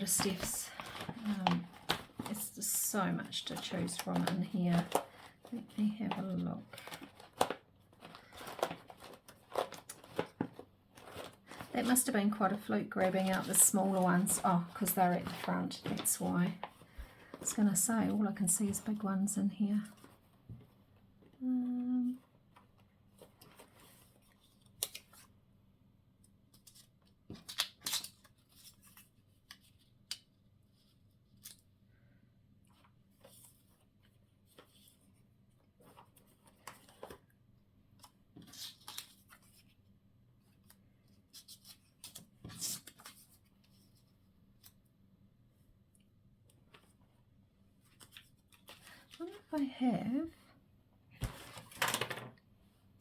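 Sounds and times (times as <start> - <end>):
paper rustling: 0.0 - 19.0, 35.8 - 37.3, 38.0 - 39.8.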